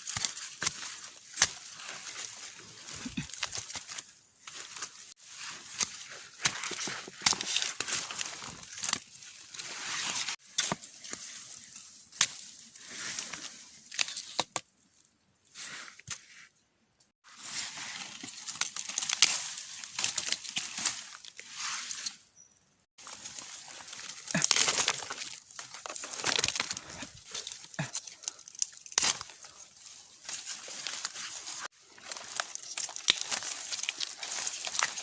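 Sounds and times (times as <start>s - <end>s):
twigs snapping: 0.0s - 2.3s, 5.7s - 9.0s, 18.0s - 21.3s, 23.0s - 35.0s
dry leaves rustling: 17.2s - 22.0s, 23.0s - 35.0s.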